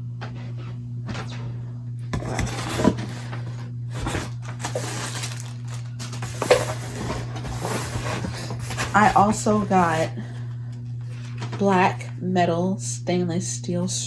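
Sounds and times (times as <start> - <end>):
steady low hum: 0.0 - 14.0
packaging rustling and crinkling: 3.9 - 10.0.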